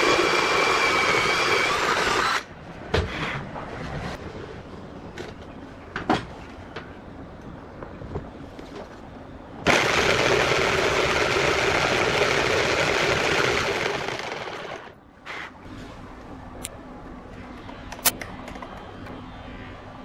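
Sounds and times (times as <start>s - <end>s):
metalworking power tool: 0.0s - 2.5s, 9.7s - 15.0s.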